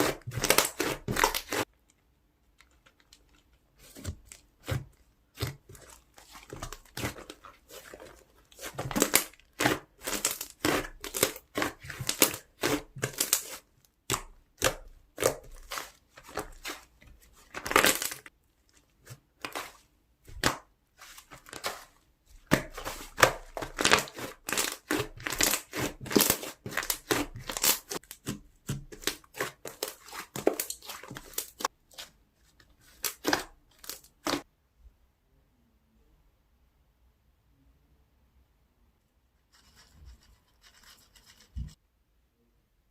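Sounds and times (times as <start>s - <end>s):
slime crackling and squelching: 0.0s - 1.8s, 2.4s - 32.2s, 32.8s - 34.5s.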